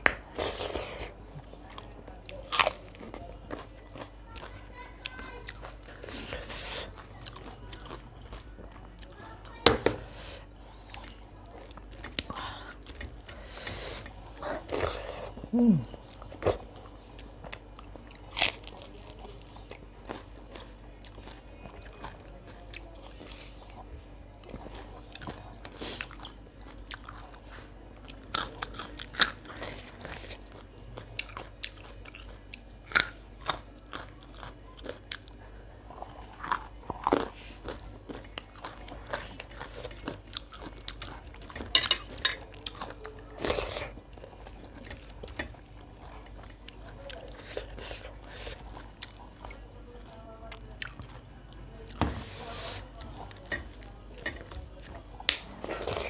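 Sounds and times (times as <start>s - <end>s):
crunchy bites and chewing: 1.8s - 4.6s, 14.6s - 23.8s, 28.0s - 41.6s.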